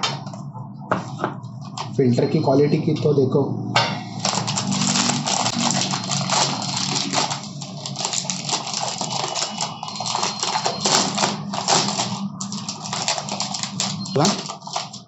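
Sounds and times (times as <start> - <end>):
packaging crinkling and rustling: 4.2 - 15.0.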